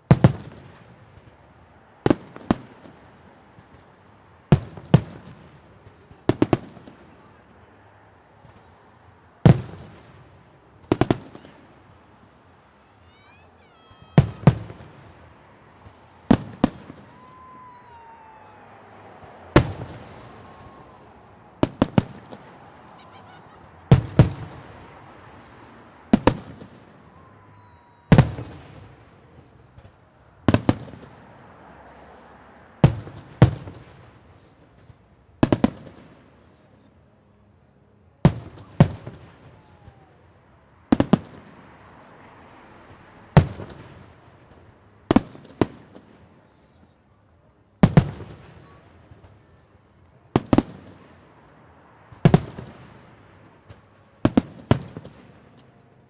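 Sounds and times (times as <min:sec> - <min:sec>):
fireworks bursting with booms: 0:00.0 - 0:07.5, 0:09.4 - 0:12.2, 0:12.8 - 0:31.2, 0:32.8 - 0:36.8, 0:38.2 - 0:40.1, 0:40.9 - 0:42.1, 0:43.3 - 0:46.8, 0:47.8 - 0:49.7, 0:50.3 - 0:51.3, 0:52.1 - 0:55.4
fireworks whistles: 0:10.8 - 0:29.6, 0:30.5 - 0:36.9, 0:38.4 - 0:40.2, 0:40.9 - 0:42.2, 0:42.9 - 0:44.2, 0:45.1 - 0:47.0.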